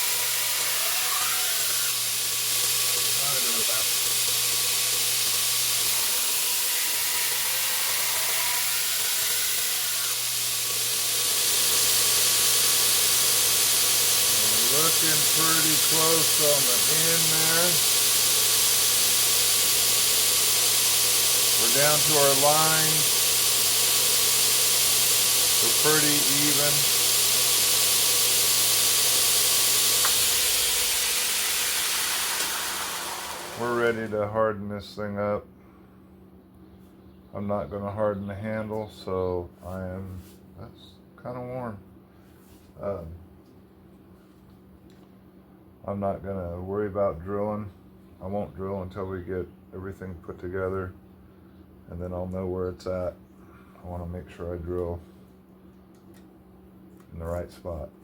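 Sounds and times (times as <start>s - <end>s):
belt grinder hissing: 0.0s - 34.2s
grinder motor low hum: 0.0s - 34.3s.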